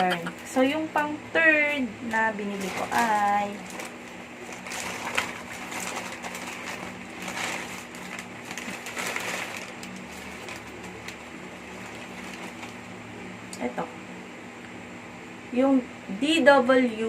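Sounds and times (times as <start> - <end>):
steady low hum: 0.0 - 17.0
plastic packaging crinkling: 2.0 - 12.9.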